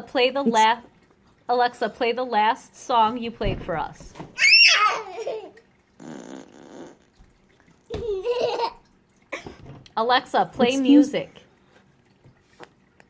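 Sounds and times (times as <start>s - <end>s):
child squealing and laughing: 4.4s - 5.6s
buzzy fart noise from speaker: 6.0s - 7.2s.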